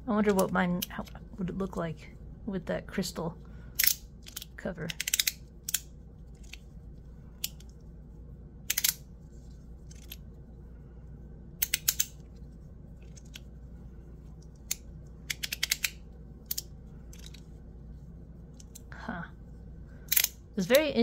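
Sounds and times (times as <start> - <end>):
fidget toy clicking: 14.6 - 17.4.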